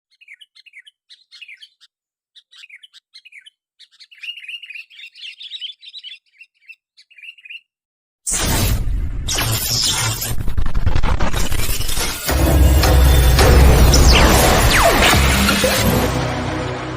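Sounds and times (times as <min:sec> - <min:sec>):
bulbul song: 0:00.1 - 0:07.7.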